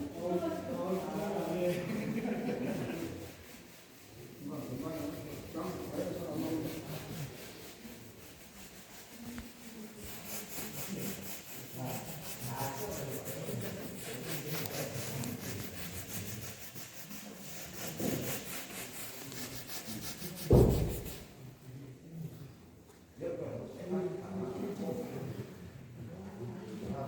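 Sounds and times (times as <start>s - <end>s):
rubbing strokes on surface: 0.0s - 21.4s
heavy thump: 20.5s - 21.2s.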